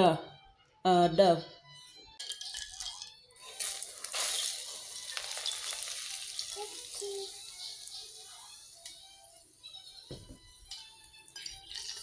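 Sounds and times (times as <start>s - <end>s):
hot oil sizzling on flour: 3.4s - 9.2s.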